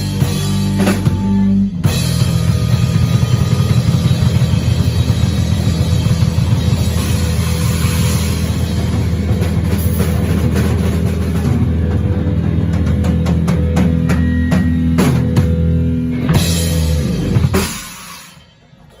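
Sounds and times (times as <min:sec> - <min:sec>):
drum hits: 0:00.0 - 0:18.0
distorted guitar and bass: 0:00.0 - 0:19.0.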